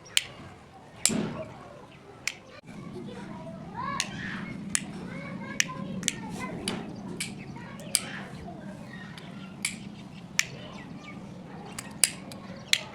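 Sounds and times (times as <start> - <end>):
light switch clicks: 5.6 - 8.1, 9.2 - 10.6, 11.7 - 12.9.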